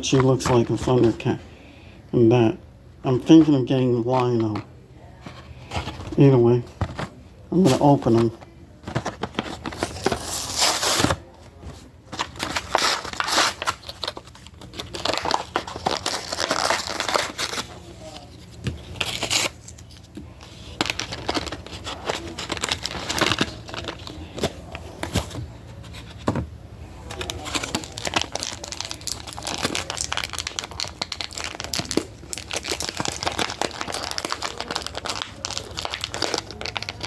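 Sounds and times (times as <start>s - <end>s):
plastic and cardboard crinkling: 3.2s - 37.0s
packaging tearing: 9.0s - 11.2s, 12.2s - 18.2s, 18.8s - 24.4s, 27.0s - 37.0s.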